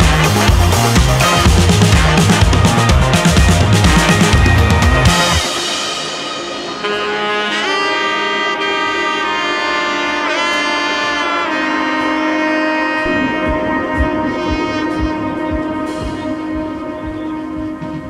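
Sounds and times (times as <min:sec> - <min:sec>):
steady beat: 0:00.0 - 0:07.8, 0:12.9 - 0:18.0
saxophone-like melody: 0:00.0 - 0:18.0.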